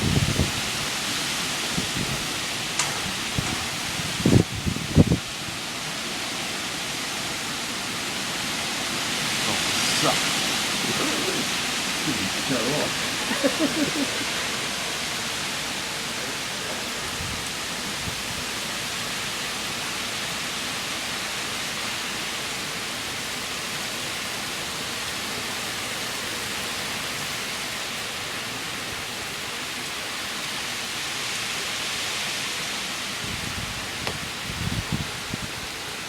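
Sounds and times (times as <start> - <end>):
heavy rain and wind: 0.0 - 36.0.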